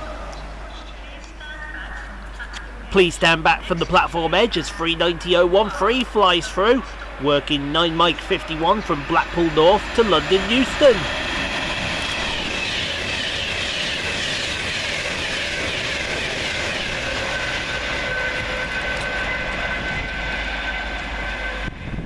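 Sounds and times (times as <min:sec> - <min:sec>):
train passing at speed: 0:00.0 - 0:22.0
rail clatter: 0:06.9 - 0:22.0.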